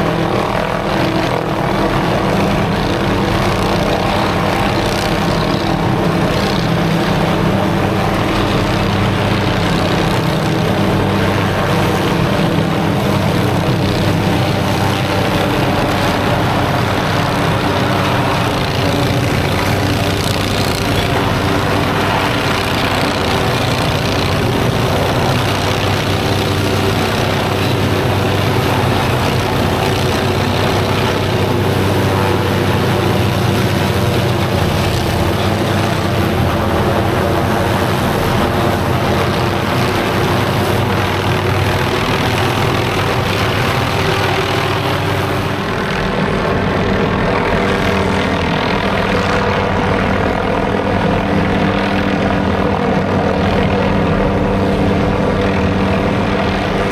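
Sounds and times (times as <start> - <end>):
helicopter rotor and engine: 0.0 - 56.9.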